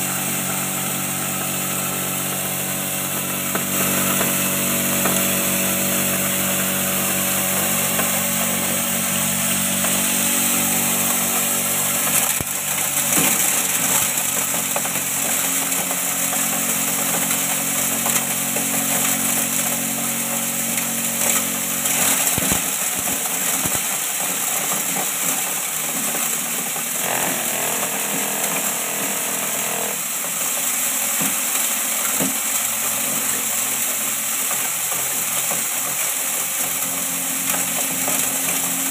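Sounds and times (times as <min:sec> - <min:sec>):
grinding mill motor hum and hiss: 0:00.0 - 0:38.9.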